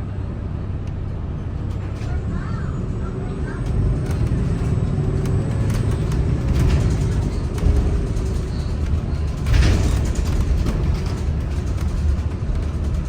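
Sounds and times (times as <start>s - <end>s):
bus engine low rumble: 0.0s - 13.0s
small rattles: 1.6s - 2.6s, 3.7s - 13.0s.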